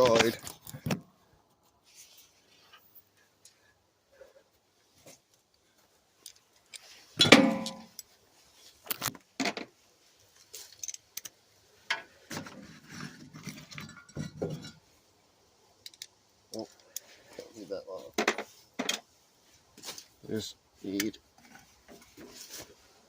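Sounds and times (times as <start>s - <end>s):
metal tools clanging and clinking: 6.2s - 8.2s, 13.4s - 14.9s
tools clattering and rummaging: 6.2s - 8.2s, 10.4s - 14.9s, 18.0s - 19.1s.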